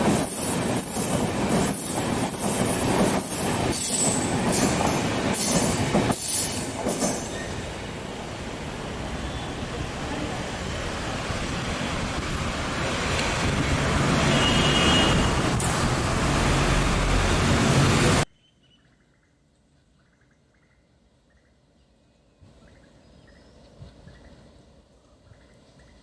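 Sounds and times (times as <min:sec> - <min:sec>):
train rumbling on track: 0:00.0 - 0:18.3.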